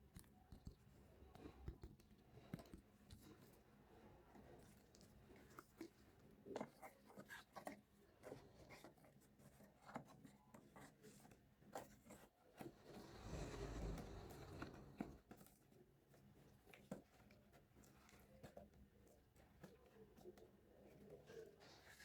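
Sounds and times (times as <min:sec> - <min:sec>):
soft rubbing: 0:10.5 - 0:15.4.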